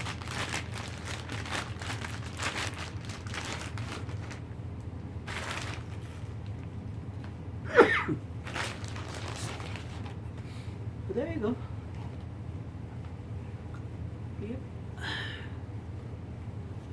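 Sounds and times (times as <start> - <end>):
packaging rustling: 0.0 - 4.5, 5.2 - 6.7, 8.4 - 10.2.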